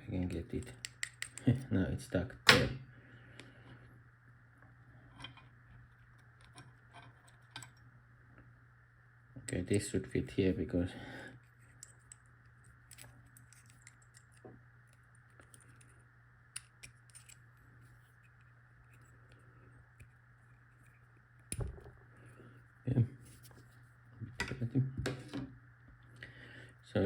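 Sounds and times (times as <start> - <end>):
low steady hum: 0.0 - 27.0
faint metal clicks and scrapes: 5.0 - 7.9, 11.4 - 21.6.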